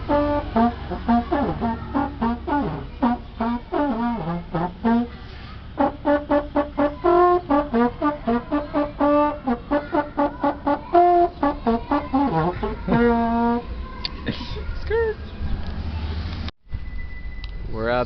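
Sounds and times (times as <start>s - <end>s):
brass instrument playing short notes: 0.0s - 13.6s.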